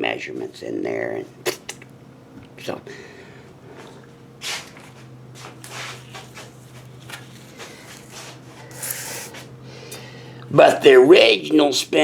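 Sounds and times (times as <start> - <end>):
steady low hum: 0.0 - 12.0
rubbing and scraping strokes: 5.4 - 9.5.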